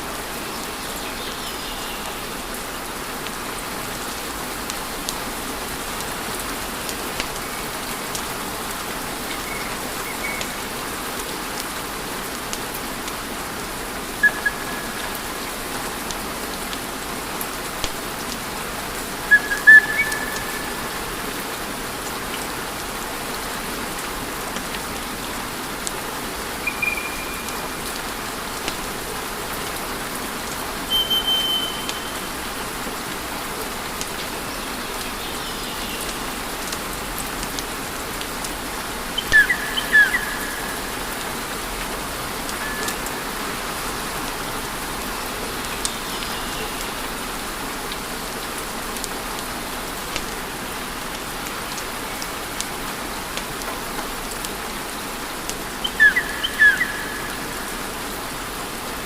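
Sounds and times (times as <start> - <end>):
high whistling chirps: 14.2 - 15.0, 19.3 - 21.1, 26.6 - 27.8, 30.9 - 32.3, 39.2 - 40.8.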